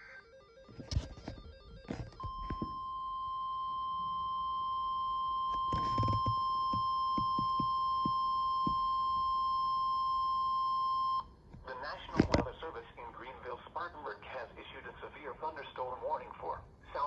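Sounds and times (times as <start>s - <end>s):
steady high alarm tone: 0.0s - 11.3s.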